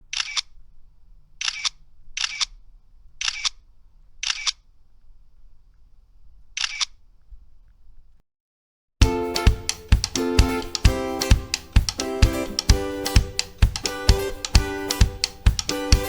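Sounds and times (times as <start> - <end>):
camera shutter double clicks: 0.1 - 0.5, 1.4 - 2.6, 3.2 - 3.6, 4.2 - 4.6, 6.6 - 7.0.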